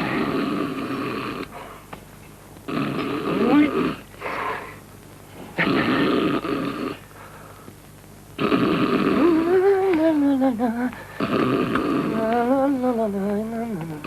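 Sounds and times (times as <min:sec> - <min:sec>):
person snoring loudly: 0:00.0 - 0:01.5, 0:02.7 - 0:04.0, 0:05.6 - 0:07.1, 0:08.4 - 0:10.0, 0:10.8 - 0:13.0.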